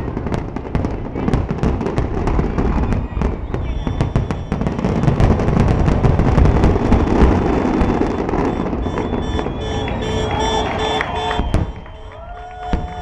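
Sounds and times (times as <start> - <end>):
fireworks bangs and crackles: 0.0 - 13.0
short horn-like tones: 7.9 - 12.6.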